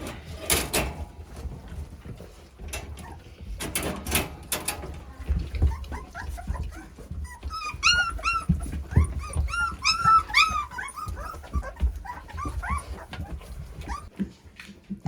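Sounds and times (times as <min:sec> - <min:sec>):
low bumps and shuffling: 0:00.0 - 0:15.0
puppies whimpering and squealing: 0:01.3 - 0:03.6, 0:04.9 - 0:14.2.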